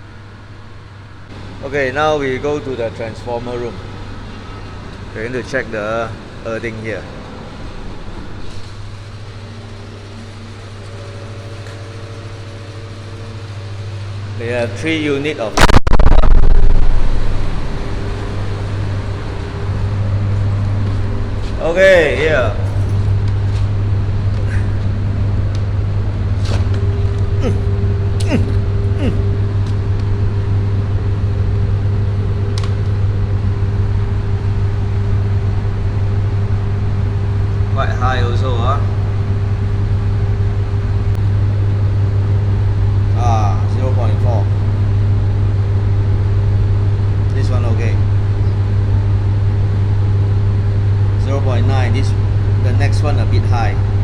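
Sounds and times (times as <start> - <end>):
power transformer hum: 0.0 - 54.0
transformer humming: 15.5 - 35.7.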